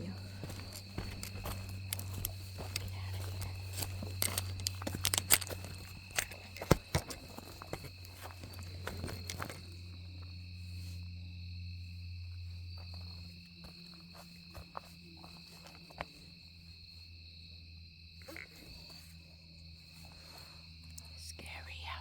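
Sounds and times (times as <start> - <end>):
low hum: 0.0 - 12.2
insects trilling: 0.0 - 22.0.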